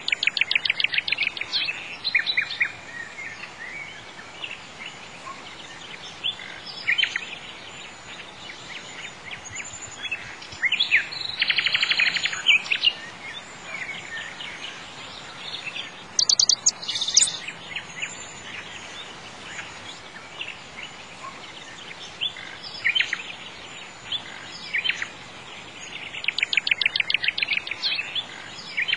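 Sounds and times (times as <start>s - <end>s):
songbirds chirping: 0.0s - 28.9s
steady background hiss: 0.0s - 28.9s
bird trills: 16.2s - 17.4s.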